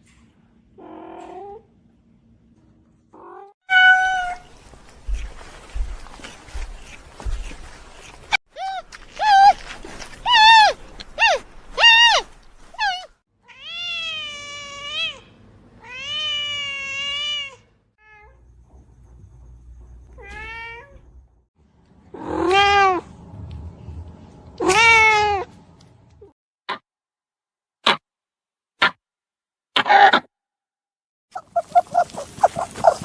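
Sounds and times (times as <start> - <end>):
cat meowing: 3.2 - 4.5.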